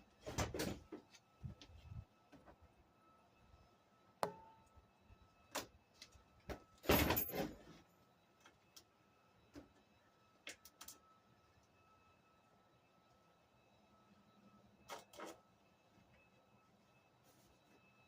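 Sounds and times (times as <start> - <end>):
metallic clinks of tools and bolts: 6.8 - 7.7.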